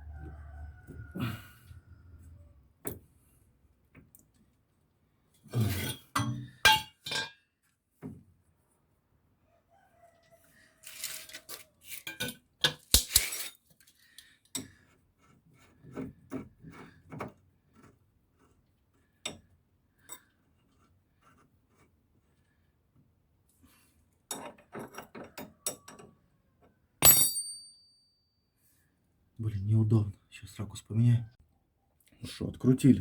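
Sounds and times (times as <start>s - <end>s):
steel tools clinking on metal: 5.6s - 7.4s.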